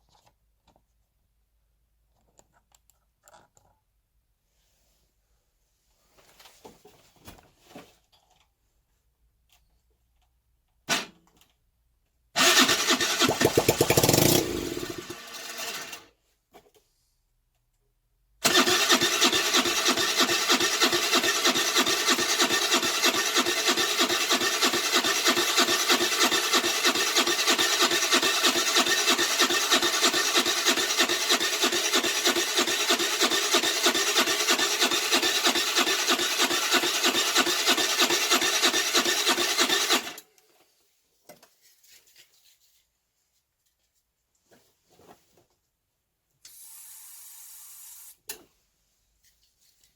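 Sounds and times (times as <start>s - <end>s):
electric starter cranking engine: 12.4s - 16.1s, 18.4s - 40.2s.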